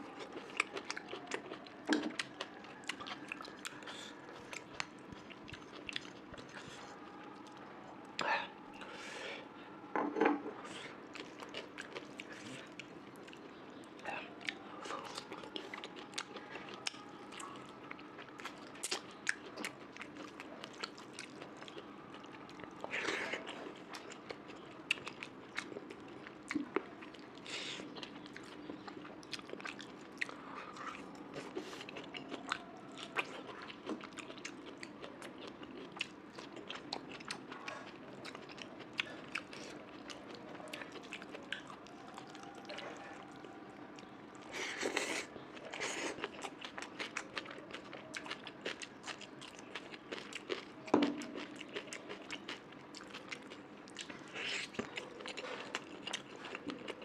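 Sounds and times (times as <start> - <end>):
person chewing food: 0.0 - 9.0, 10.4 - 57.0.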